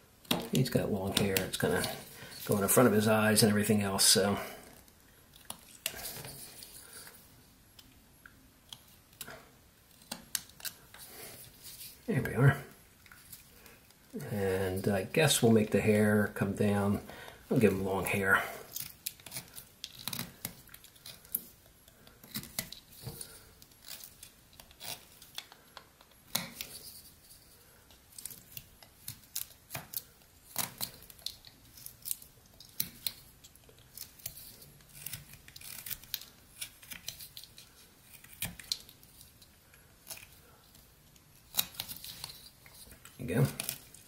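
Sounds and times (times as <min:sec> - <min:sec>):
knife carving wood: 0:00.2 - 0:03.0, 0:08.6 - 0:12.1, 0:17.6 - 0:44.0.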